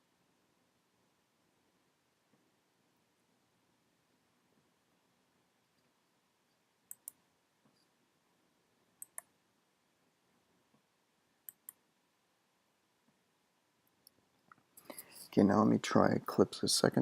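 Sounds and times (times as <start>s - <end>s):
computer mouse double-clicks: 6.9s - 7.2s, 9.0s - 9.3s, 11.4s - 11.8s.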